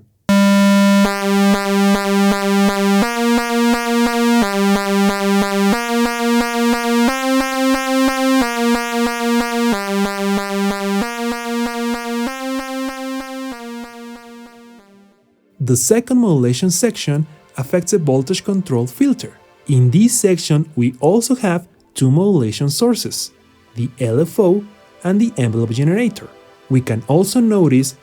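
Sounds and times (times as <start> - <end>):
analog synthesizer pulse wave notes: 0.0 - 15.2.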